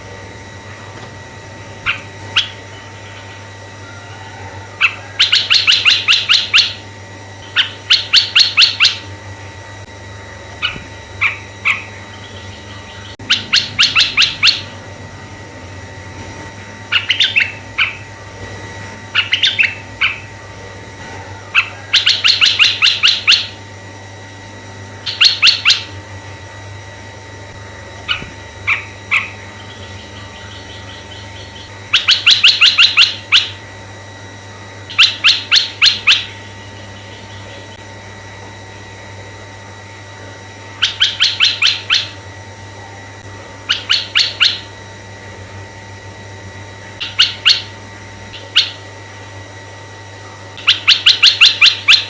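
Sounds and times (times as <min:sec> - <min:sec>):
bird singing high repeated notes: 0:01.9 - 0:03.2, 0:04.8 - 0:06.8, 0:07.6 - 0:09.0, 0:10.6 - 0:14.8, 0:16.9 - 0:18.1, 0:19.1 - 0:20.3, 0:21.6 - 0:23.6, 0:25.1 - 0:25.9, 0:28.1 - 0:33.6, 0:34.9 - 0:37.6, 0:40.8 - 0:42.2, 0:43.7 - 0:44.7, 0:47.0 - 0:48.8, 0:50.6 - 0:52.0.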